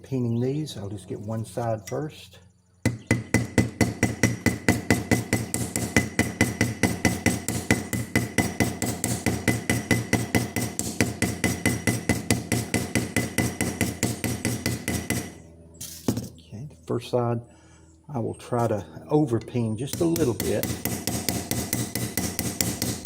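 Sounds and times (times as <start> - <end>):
hammer tapping metal pins: 2.9 - 16.3, 19.9 - 23.0.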